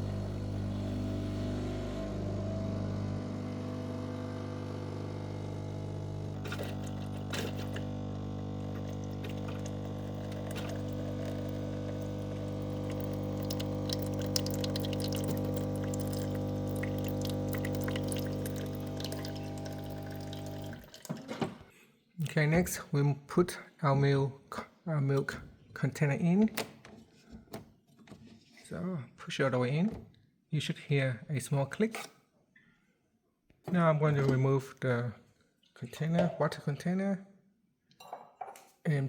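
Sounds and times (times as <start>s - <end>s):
espresso machine pump humming: 0.0s - 21.2s
water running into a container: 0.0s - 21.7s.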